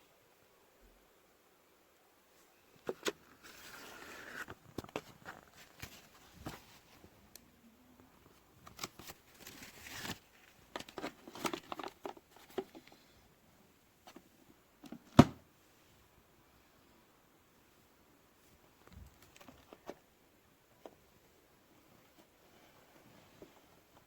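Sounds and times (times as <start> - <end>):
handling clicks and rustling: 8.2 - 13.0, 18.8 - 20.1.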